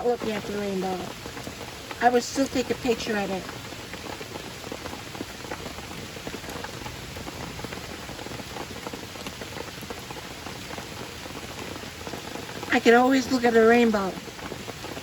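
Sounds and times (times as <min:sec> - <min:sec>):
rain pattering: 0:00.0 - 0:15.0.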